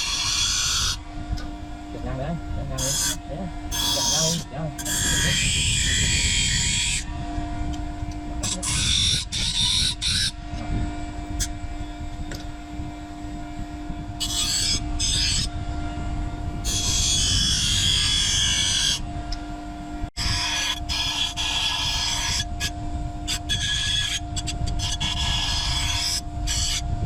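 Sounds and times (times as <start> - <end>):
electric grinder motor humming: 0.0 - 19.4, 20.1 - 27.0
high grinding hiss on metal: 20.2 - 22.7, 24.8 - 26.8.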